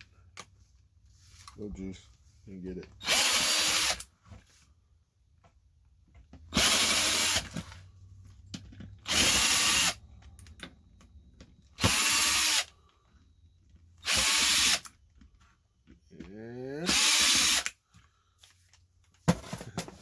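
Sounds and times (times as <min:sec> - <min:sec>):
power drill motor spinning: 0:03.0 - 0:04.1, 0:06.5 - 0:07.8, 0:08.9 - 0:10.0, 0:11.7 - 0:12.9, 0:14.0 - 0:15.0, 0:16.8 - 0:17.8.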